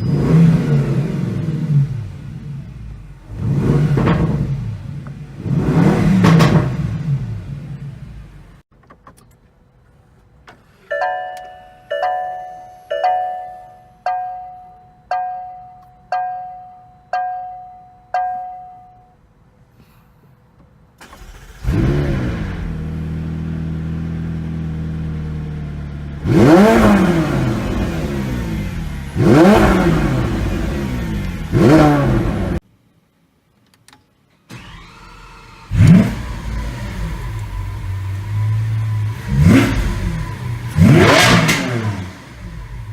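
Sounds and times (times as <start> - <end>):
car engine starting and revving: 0.0 - 8.6, 21.0 - 32.6, 34.5 - 42.9
car warning chime: 10.8 - 19.2.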